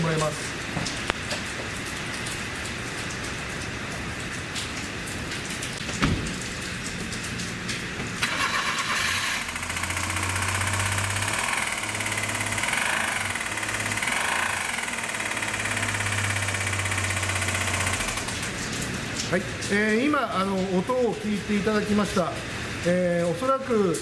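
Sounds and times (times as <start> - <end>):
thump: 6.0 - 6.4
engine cranking and idling: 8.2 - 18.8.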